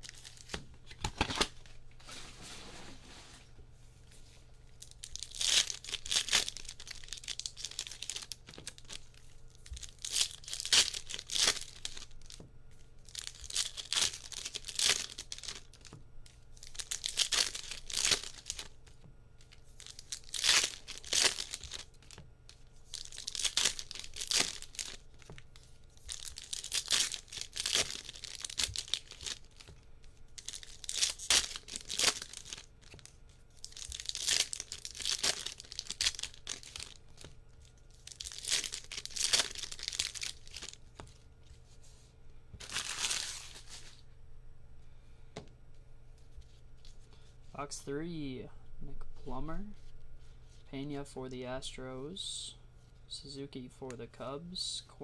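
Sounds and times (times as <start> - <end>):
foil wrappers tearing open: 0.0 - 1.7, 4.8 - 12.4, 13.0 - 16.0, 16.6 - 22.2, 22.8 - 29.7, 30.4 - 41.2, 42.6 - 44.0.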